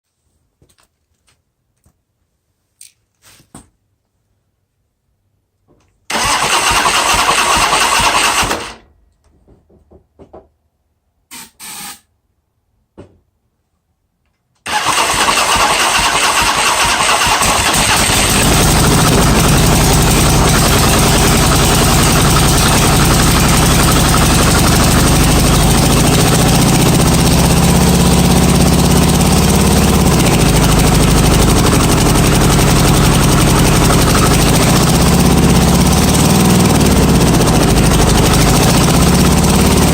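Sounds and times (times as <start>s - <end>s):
motorcycle engine cranking: 6.1s - 8.8s, 14.7s - 39.9s
motorcycle engine idling: 14.8s - 39.9s.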